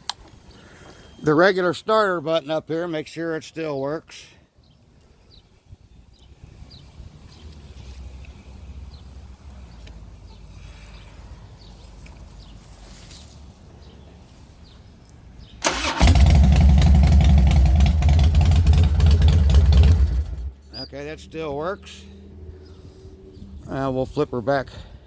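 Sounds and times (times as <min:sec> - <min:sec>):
electric starter cranking engine: 0:15.6 - 0:20.4
motorcycle engine idling: 0:15.6 - 0:20.6.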